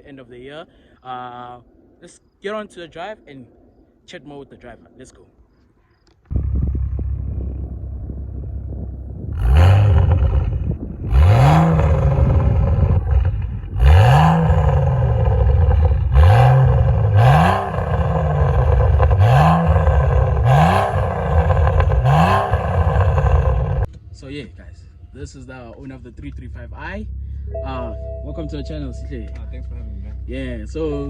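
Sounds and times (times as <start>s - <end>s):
car engine revving through gears: 6.3s - 23.9s.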